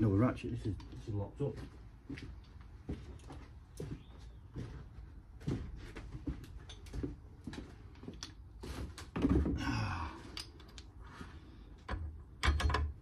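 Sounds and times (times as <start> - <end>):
hand tools clicking and knocking: 10.3 - 11.0, 11.8 - 13.0.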